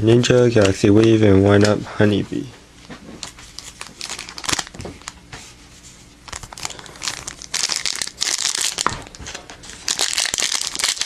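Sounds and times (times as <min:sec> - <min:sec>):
foil wrapper crinkling: 0:03.2 - 0:05.2, 0:06.2 - 0:11.0.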